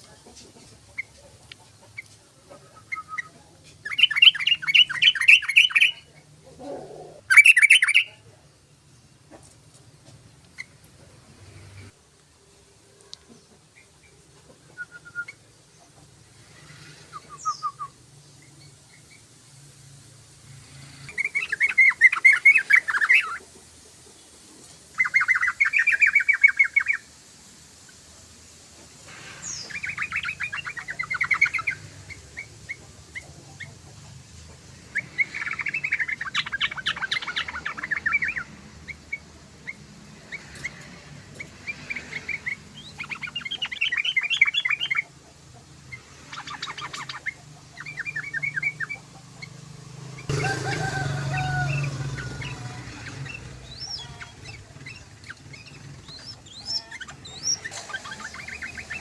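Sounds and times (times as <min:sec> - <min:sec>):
bulbul chattering song: 0:00.8 - 0:09.2, 0:13.5 - 0:20.0, 0:20.8 - 0:24.3, 0:24.9 - 0:28.1, 0:29.2 - 0:59.0
bird chirps: 0:01.9 - 0:06.2, 0:07.3 - 0:08.2, 0:17.0 - 0:19.3, 0:21.0 - 0:23.4, 0:25.0 - 0:27.1, 0:29.4 - 0:33.9, 0:34.9 - 0:45.2, 0:45.8 - 0:50.6, 0:51.4 - 0:59.0.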